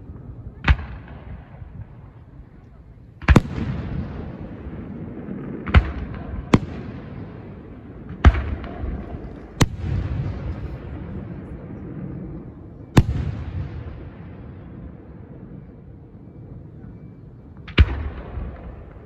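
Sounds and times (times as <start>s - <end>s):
fireworks bangs: 3.2s - 14.6s.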